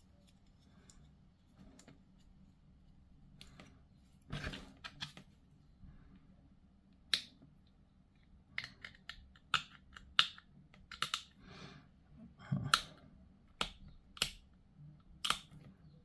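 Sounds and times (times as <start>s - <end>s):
plastic parts clicking: 8.5s - 11.4s, 15.1s - 15.7s.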